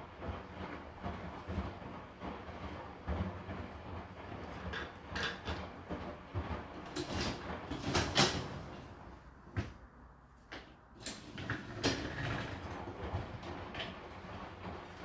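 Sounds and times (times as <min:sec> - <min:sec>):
dishwasher racks rolling: 0:00.2 - 0:09.8, 0:10.6 - 0:15.0
dishes and racks knocking: 0:04.6 - 0:05.6.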